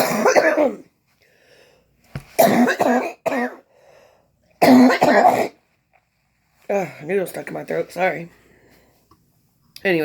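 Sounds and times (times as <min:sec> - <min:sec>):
woman coughing: 0:00.0 - 0:00.9, 0:02.4 - 0:03.7, 0:04.6 - 0:05.6.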